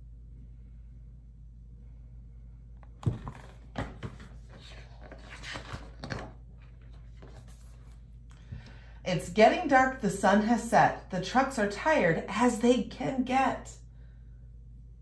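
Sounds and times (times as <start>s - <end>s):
low room hum: 0.0s - 15.0s
paper rustling: 3.1s - 8.0s.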